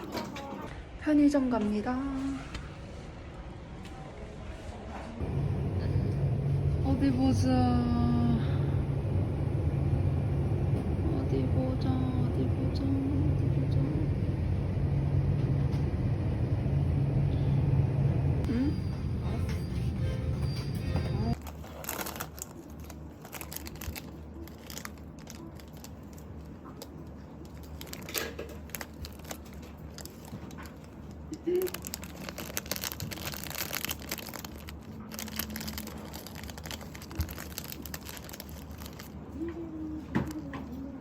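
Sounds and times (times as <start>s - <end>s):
plastic packaging crinkling: 21.4s - 40.6s.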